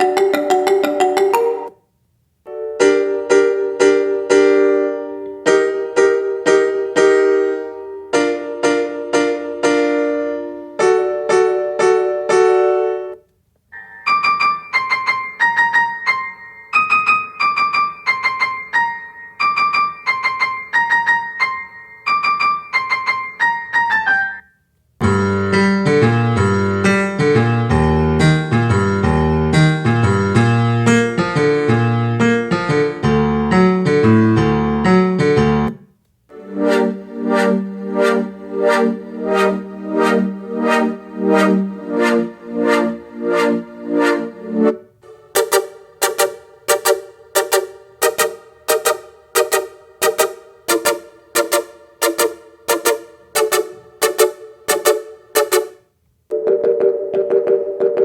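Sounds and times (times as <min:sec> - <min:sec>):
high bright keyboard melody: 0:00.0 - 0:01.8, 0:02.5 - 0:58.0
piano-like chords: 0:00.0 - 0:01.8, 0:25.0 - 0:56.4.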